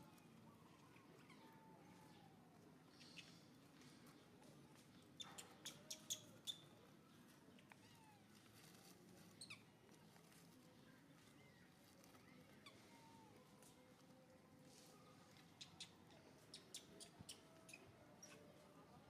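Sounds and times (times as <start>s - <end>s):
baby monkey squeaking: 5.2s - 6.6s.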